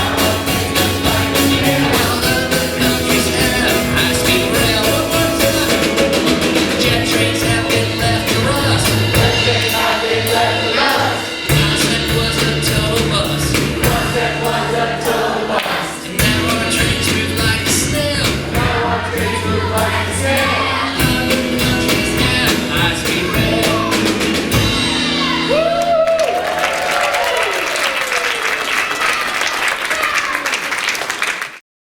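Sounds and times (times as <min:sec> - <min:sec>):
audience applause and cheering: 0:00.0 - 0:11.8, 0:23.4 - 0:31.6
person singing: 0:00.0 - 0:25.9
live rock band playing: 0:00.0 - 0:27.0.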